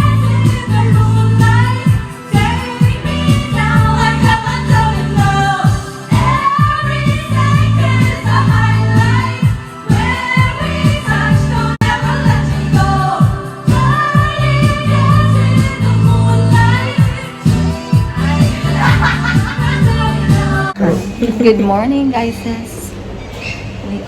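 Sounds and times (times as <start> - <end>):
pop song with singer: 0.0 - 20.8.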